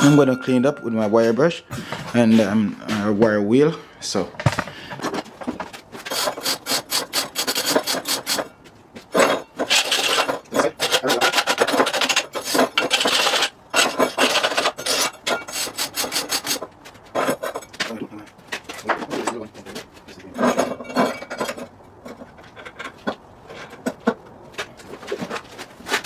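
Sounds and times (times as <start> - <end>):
wire brush scrubbing metal: 6.0 - 8.5, 9.2 - 17.5.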